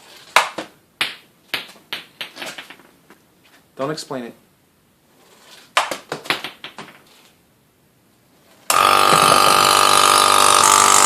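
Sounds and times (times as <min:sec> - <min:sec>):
electric pump whining: 0:08.7 - 0:11.0.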